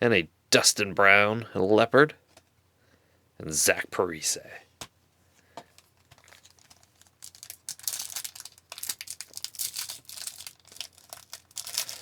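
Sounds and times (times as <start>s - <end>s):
card pack wrapper crinkling: 5.7s - 12.0s.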